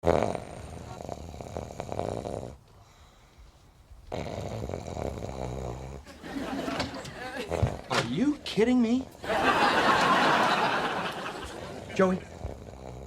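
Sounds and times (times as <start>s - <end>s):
man snoring: 0.0s - 2.6s, 4.1s - 6.1s, 7.3s - 7.9s, 11.8s - 13.0s.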